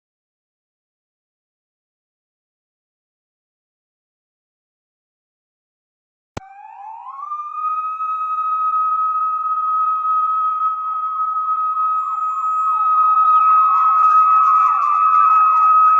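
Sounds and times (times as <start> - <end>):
siren wailing: 6.4 - 15.9.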